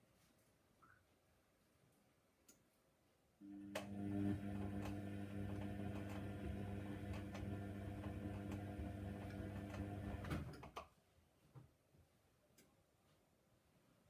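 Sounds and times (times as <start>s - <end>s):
washing machine motor hum: 3.4s - 10.6s.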